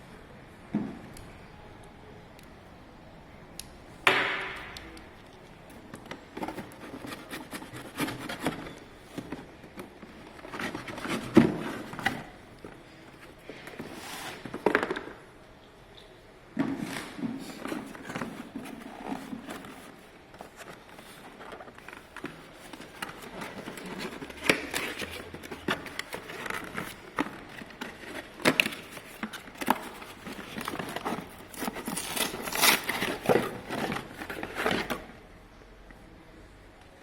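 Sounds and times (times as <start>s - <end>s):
plastic wrapping crinkling: 17.6s - 35.1s.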